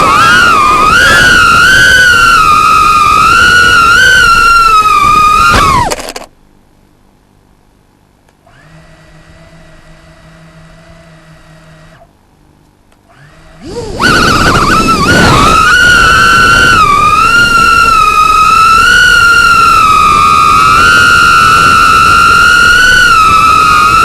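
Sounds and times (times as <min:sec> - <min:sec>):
drone motors whining: 0:00.0 - 0:06.3, 0:08.4 - 0:12.1, 0:13.1 - 0:24.0
faint steady hum: 0:00.0 - 0:24.0.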